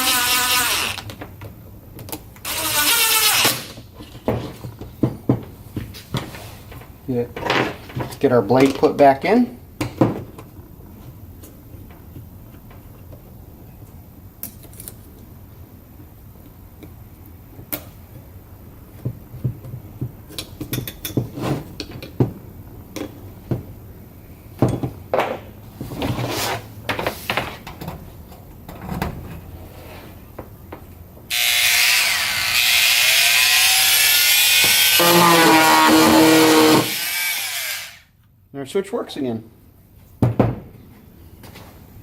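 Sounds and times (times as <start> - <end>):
oscillating multi-tool running: 0.0 - 1.0, 31.3 - 35.2, 36.7 - 38.0.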